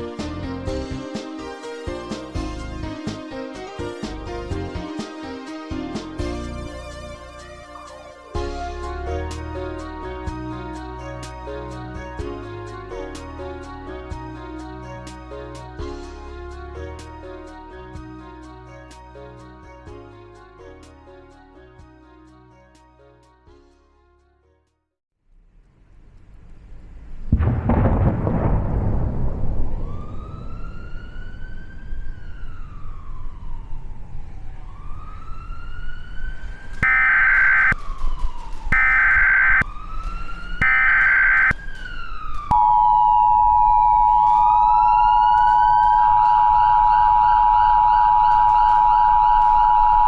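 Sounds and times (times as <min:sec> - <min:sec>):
loud boom: 0:27.3 - 0:30.4
police sirens wailing: 0:29.6 - 0:50.0
data tone bursts: 0:36.8 - 0:37.8, 0:38.8 - 0:39.6, 0:40.6 - 0:41.6
two-tone attention signal: 0:36.8 - 0:37.8, 0:38.8 - 0:39.6, 0:40.6 - 0:41.5, 0:42.5 - 0:44.7.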